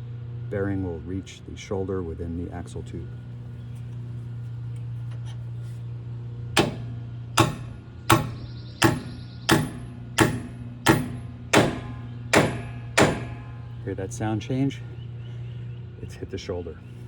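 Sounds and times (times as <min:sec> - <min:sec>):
steady low hum: 0:00.0 - 0:17.0
hammer striking metal tool: 0:06.6 - 0:13.6.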